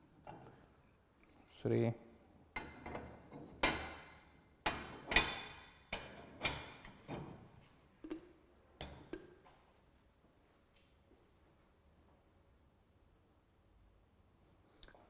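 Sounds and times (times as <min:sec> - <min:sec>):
metal stove parts clanking: 0:02.6 - 0:07.4.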